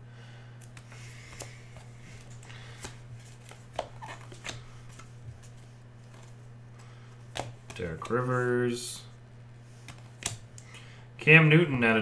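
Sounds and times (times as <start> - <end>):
trading cards being handled: 0.6 - 8.6.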